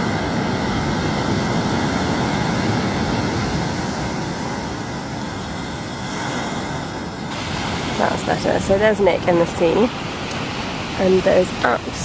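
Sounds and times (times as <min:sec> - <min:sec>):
ocean surf washing onto beach: 0:00.0 - 0:12.0.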